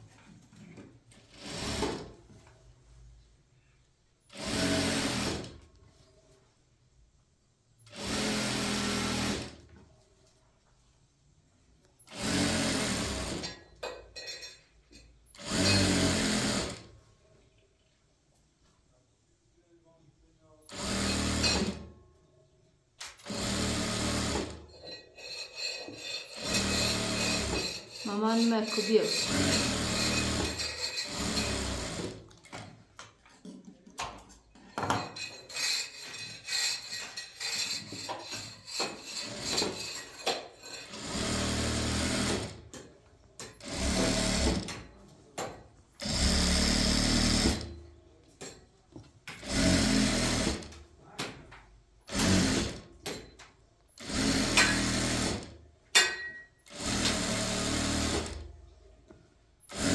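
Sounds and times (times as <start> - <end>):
small motorised machine running: 26.3 - 32.0.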